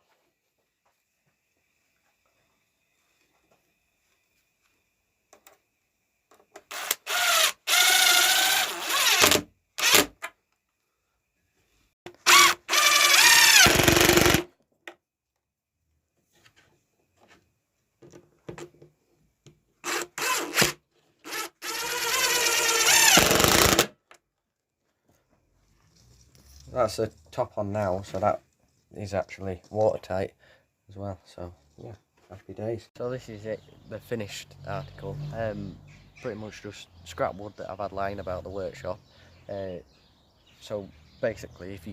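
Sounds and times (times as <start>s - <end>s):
power drill driving screws: 6.6s - 10.1s, 12.2s - 14.5s, 19.8s - 23.9s.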